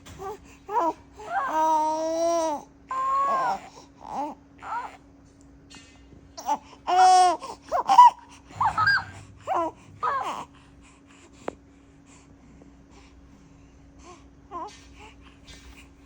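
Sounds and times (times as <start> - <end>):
baby babbling and squealing: 6.4 - 10.5.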